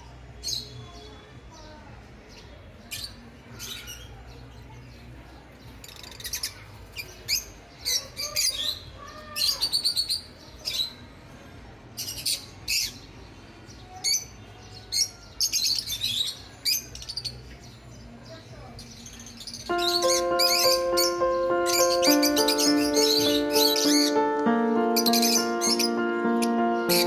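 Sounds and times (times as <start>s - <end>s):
lovebirds chirping: 19.0s - 27.0s.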